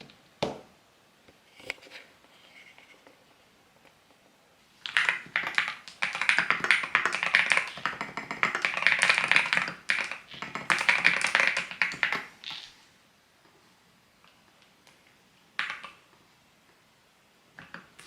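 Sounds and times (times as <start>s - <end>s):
mechanical keyboard typing: 4.8s - 12.3s, 15.6s - 16.0s.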